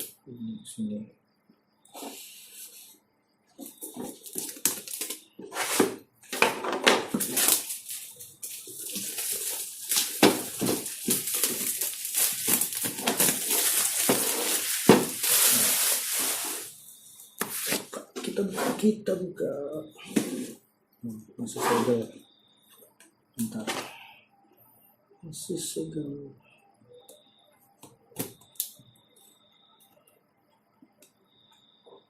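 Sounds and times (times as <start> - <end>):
packaging rustling: 3.6 - 5.8, 6.4 - 16.7
packaging clicks and scrapes: 3.7 - 16.7.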